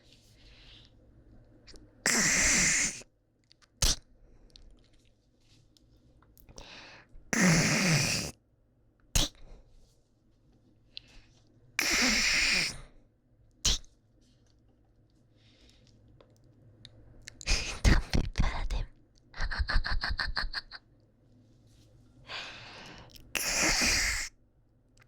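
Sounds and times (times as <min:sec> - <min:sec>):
person hawking phlegm: 0:02.1 - 0:03.0, 0:07.4 - 0:08.3, 0:11.8 - 0:12.8, 0:23.4 - 0:24.3
person spitting: 0:02.1 - 0:03.0, 0:03.8 - 0:04.0, 0:07.4 - 0:08.4, 0:09.2 - 0:09.4, 0:11.8 - 0:12.8, 0:13.6 - 0:13.9, 0:23.1 - 0:24.3.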